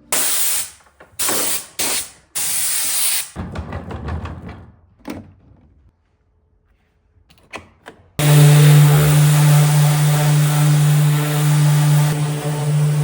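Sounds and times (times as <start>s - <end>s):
woodworking machine motor running: 8.2s - 13.0s.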